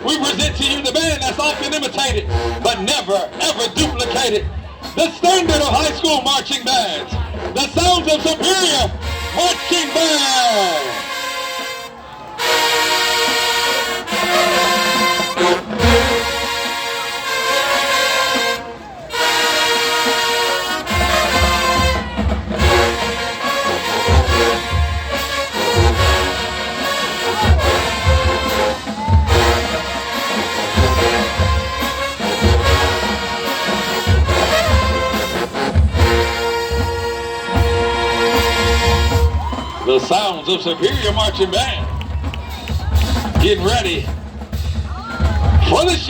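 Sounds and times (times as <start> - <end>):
brass chords: 0.0 - 41.8
marching band playing: 0.0 - 46.0
bass drums beating: 27.2 - 33.4, 34.0 - 39.9, 40.9 - 46.0.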